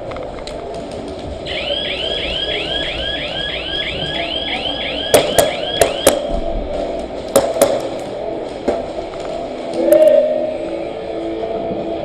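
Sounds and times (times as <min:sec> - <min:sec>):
electronic alarm whooping: 0:01.5 - 0:06.2.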